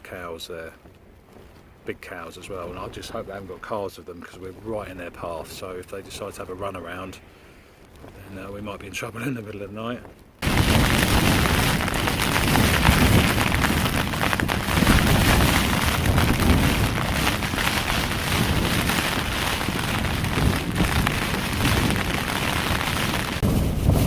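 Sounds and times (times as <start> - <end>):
heavy rain on tent fabric: 9.8 - 24.0.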